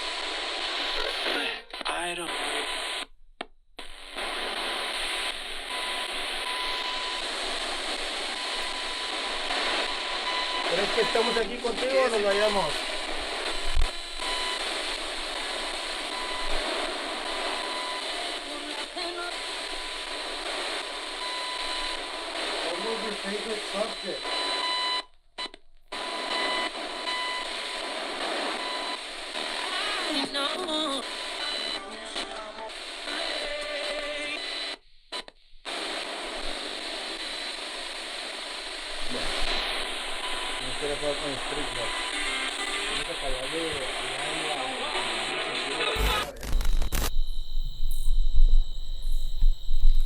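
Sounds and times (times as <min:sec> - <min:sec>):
radio static hiss: 0:00.0 - 0:03.1, 0:03.8 - 0:25.0, 0:25.9 - 0:50.0
snatches of broadcast sound: 0:00.0 - 0:50.0
short snatches of radio sound: 0:04.2 - 0:18.4, 0:38.9 - 0:49.2
faint steady tone: 0:46.0 - 0:50.0.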